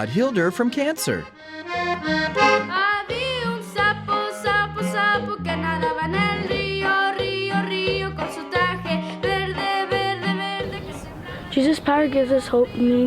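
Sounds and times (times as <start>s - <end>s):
accordion playing lively tune: 0.0s - 6.8s.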